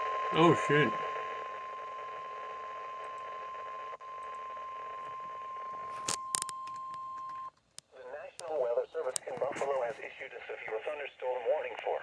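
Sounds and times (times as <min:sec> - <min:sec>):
steady high warning tone: 0:00.0 - 0:06.5.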